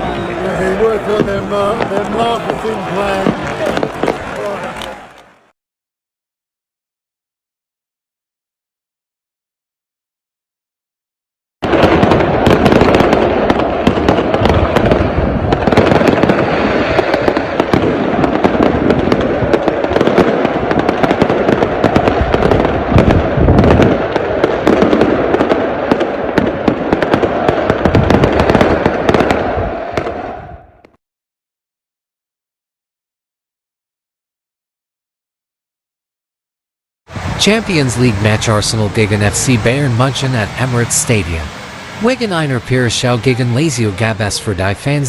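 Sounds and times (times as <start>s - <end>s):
fireworks crackling bangs: 0.0s - 5.3s, 11.6s - 30.3s, 37.1s - 45.0s.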